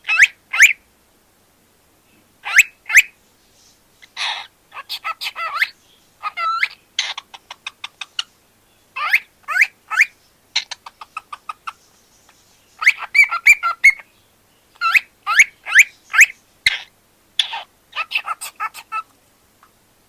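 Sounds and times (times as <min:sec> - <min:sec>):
cockatiel chirping: 0:00.0 - 0:00.8, 0:02.4 - 0:03.2, 0:04.0 - 0:08.3, 0:09.0 - 0:14.1, 0:14.8 - 0:19.1.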